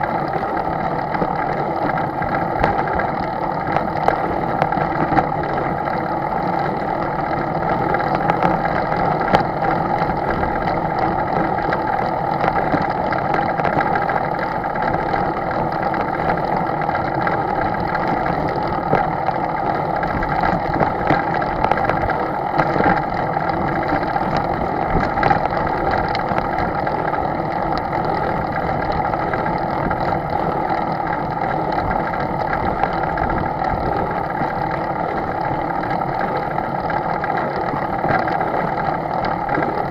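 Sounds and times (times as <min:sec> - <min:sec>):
engine humming steadily: 0:00.0 - 0:39.9.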